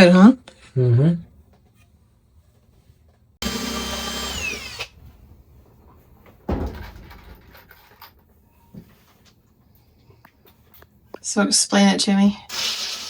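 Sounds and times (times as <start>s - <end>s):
oscillating multi-tool whine: 3.4s - 4.9s.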